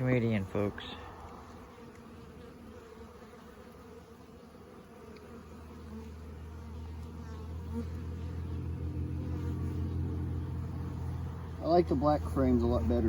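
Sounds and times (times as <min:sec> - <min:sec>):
honeybees buzzing: 0:00.0 - 0:13.0
low hum: 0:06.2 - 0:13.0.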